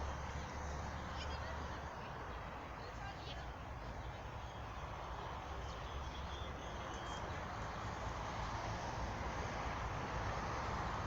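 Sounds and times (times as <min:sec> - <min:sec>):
outdoor rumble and hiss: 0:00.0 - 0:11.0.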